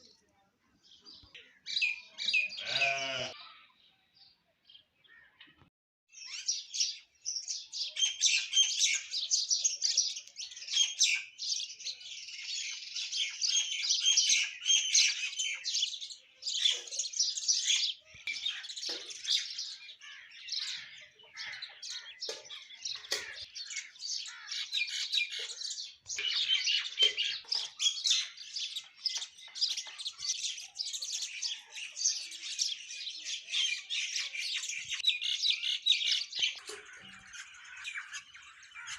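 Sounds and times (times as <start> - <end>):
flock of small birds chirping: 0.0 - 38.9.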